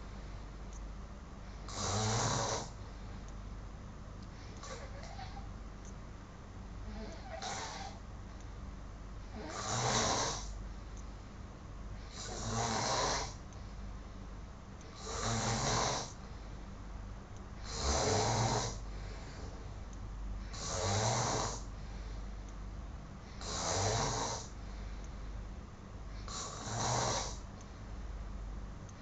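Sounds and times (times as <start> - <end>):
man snoring: 1.7 - 2.8, 6.9 - 8.0, 9.3 - 10.6, 12.1 - 13.4, 14.9 - 16.2, 17.6 - 18.8, 20.5 - 21.7, 23.4 - 24.5, 26.3 - 27.4.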